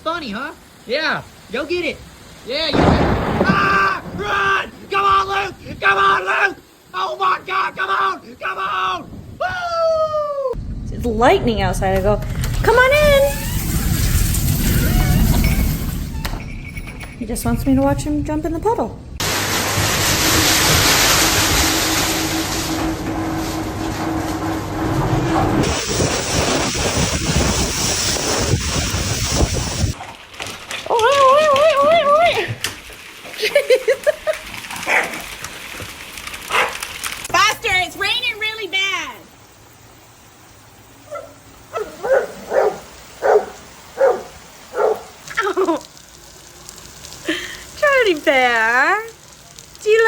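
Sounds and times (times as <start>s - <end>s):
heavy rain pouring: 0.0s - 7.0s, 10.5s - 17.2s, 18.0s - 50.0s
dog barking: 34.8s - 35.2s, 36.5s - 36.8s, 41.1s - 45.2s.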